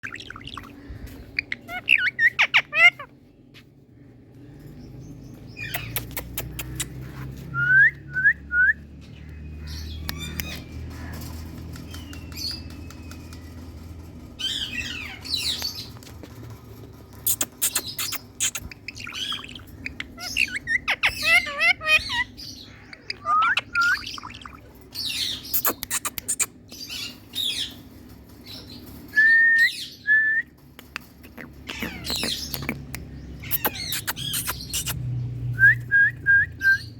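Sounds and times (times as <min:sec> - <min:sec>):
parrot chirping and squawking: 0:00.0 - 0:03.6, 0:05.5 - 0:07.4, 0:14.4 - 0:15.9, 0:17.2 - 0:27.8, 0:31.0 - 0:35.1
sharp clicks: 0:05.8 - 0:07.0.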